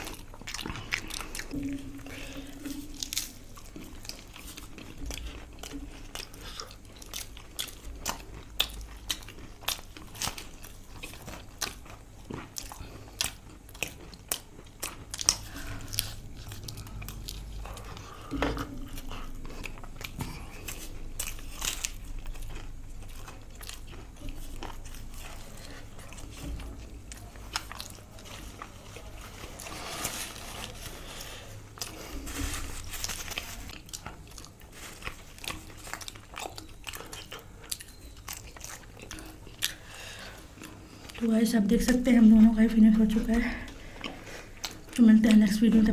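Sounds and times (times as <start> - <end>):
chewing with crisp crunches: 0.0 - 45.9.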